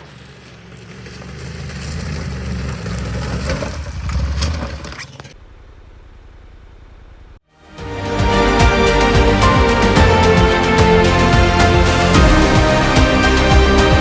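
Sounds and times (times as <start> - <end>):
motorcycle engine running: 0.0 - 7.4.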